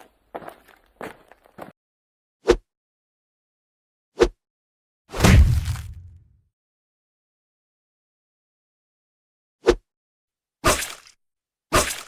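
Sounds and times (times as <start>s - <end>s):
heavy footstep thud: 5.2s - 6.2s.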